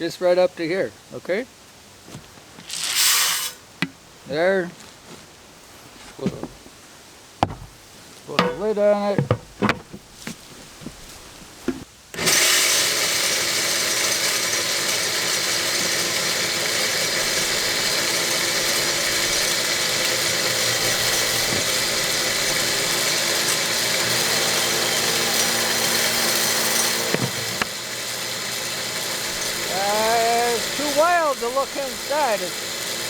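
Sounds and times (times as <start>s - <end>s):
grain grinder motor whirring: 12.1s - 33.0s.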